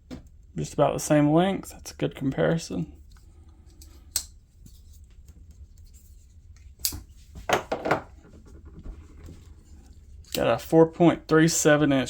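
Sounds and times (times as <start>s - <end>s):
folding knife clicks: 4.1s - 4.3s.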